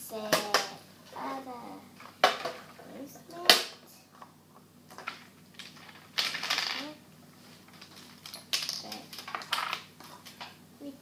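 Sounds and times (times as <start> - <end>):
toy pieces clattering and clicking: 4.9 - 7.0, 7.7 - 9.9.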